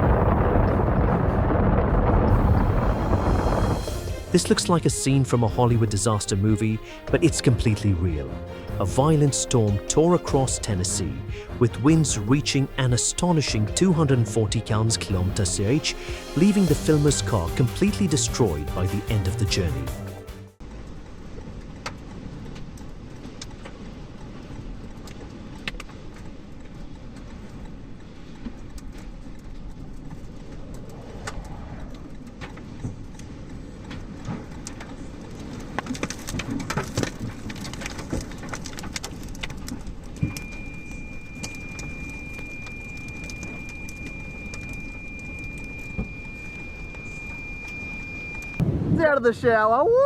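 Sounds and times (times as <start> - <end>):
wind and rain battering car: 0.0 - 8.3, 20.6 - 49.6
debris knocking and rattling: 34.4 - 40.1
high-pitched beep: 40.2 - 48.6.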